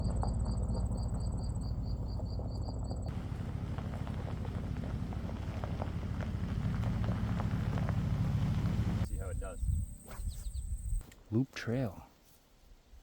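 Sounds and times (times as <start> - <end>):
low rumble: 0.0 - 9.9
insects chirping: 0.0 - 11.0
crackling rustling noise: 3.1 - 9.0.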